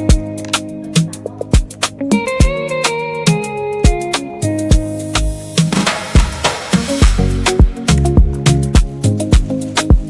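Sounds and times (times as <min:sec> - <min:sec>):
drum beat: 0:01.0 - 0:02.7, 0:03.3 - 0:10.0.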